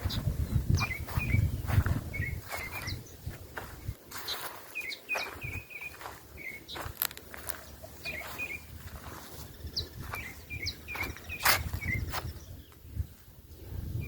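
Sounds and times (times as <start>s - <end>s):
footsteps on dry ground: 0.0s - 13.4s
songbirds chirping: 0.0s - 14.0s
higher whistled bird notes: 9.6s - 12.6s.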